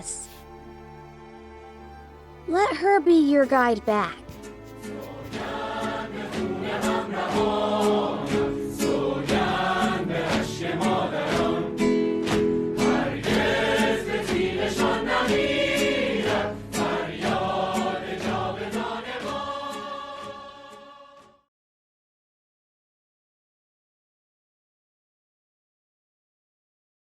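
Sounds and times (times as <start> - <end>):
choir singing: 4.3 - 21.4.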